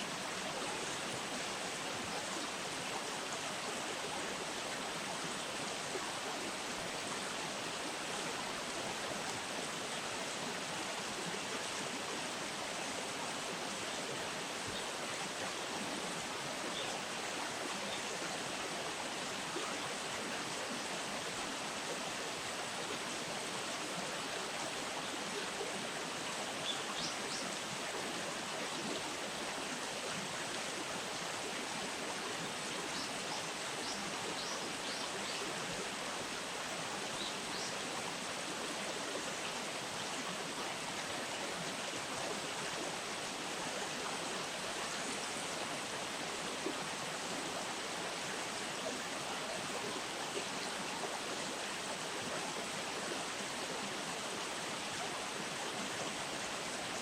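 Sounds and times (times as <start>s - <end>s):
river water flowing: 0.0s - 57.0s.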